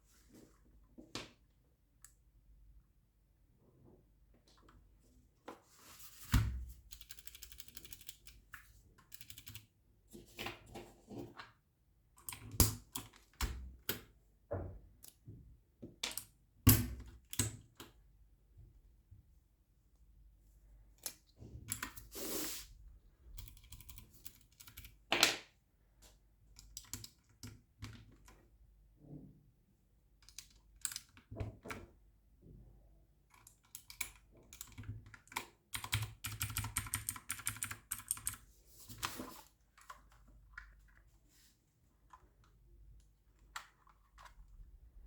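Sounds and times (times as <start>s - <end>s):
mechanical keyboard typing: 6.8s - 9.7s, 23.4s - 25.1s, 33.4s - 38.4s.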